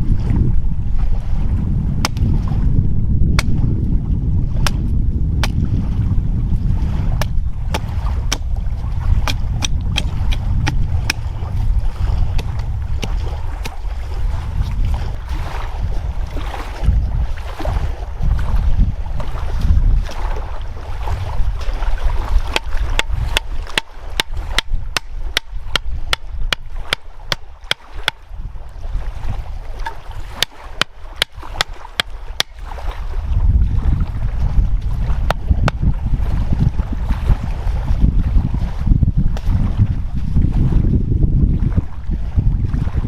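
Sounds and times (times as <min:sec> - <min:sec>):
wind buffeting microphone: 0:00.0 - 0:43.0.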